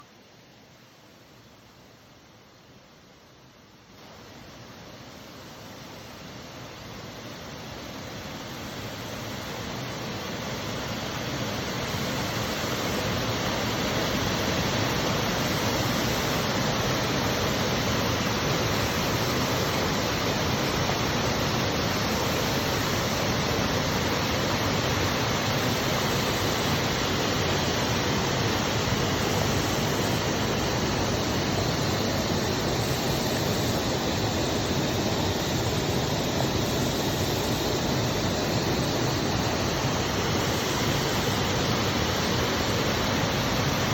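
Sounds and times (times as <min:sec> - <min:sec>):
waterfall roaring: 0:08.8 - 0:43.9.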